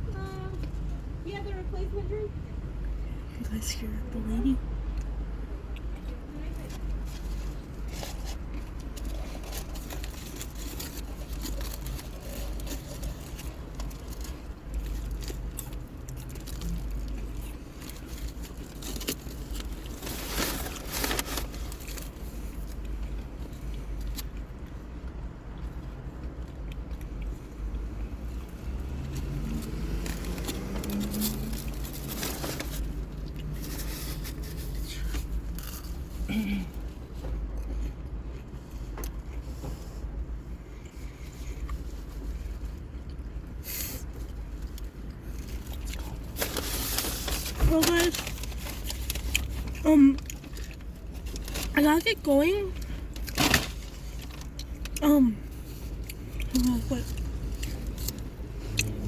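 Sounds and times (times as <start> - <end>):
car interior rumble: 0.0 - 59.0
food wrappers rustling: 6.6 - 24.4, 28.6 - 36.9, 43.6 - 59.0
wrapper crinkling: 7.9 - 22.8, 29.9 - 34.8, 45.4 - 51.8.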